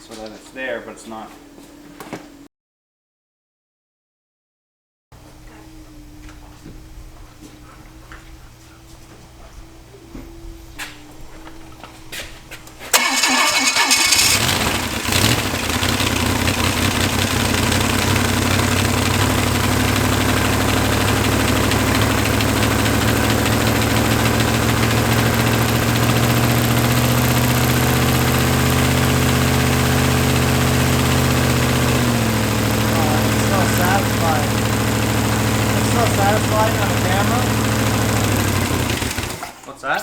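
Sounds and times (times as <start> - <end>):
car engine starting and running: 12.8 - 39.7.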